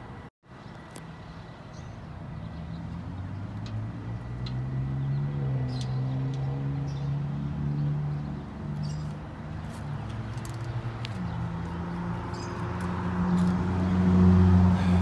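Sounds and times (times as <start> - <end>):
vehicle engine humming: 8.1 - 15.0.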